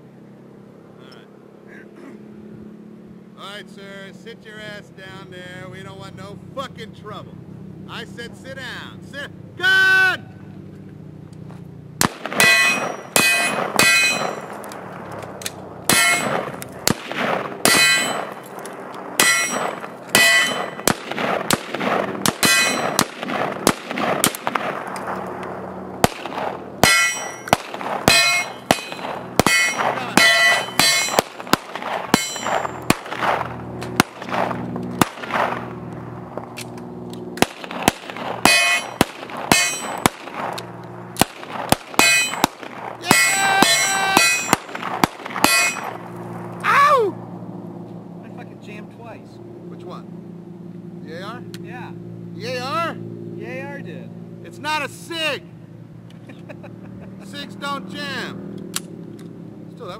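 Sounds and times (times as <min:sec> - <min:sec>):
bullets clanging on steel targets: 0:12.0 - 0:14.8, 0:15.4 - 0:21.6, 0:22.2 - 0:23.2, 0:26.0 - 0:33.2, 0:37.4 - 0:46.0
gunshots: 0:12.0 - 0:36.6, 0:37.4 - 0:46.1.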